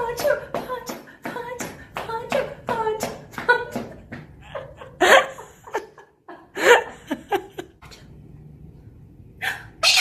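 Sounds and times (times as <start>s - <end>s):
person laughing: 4.4s - 7.8s.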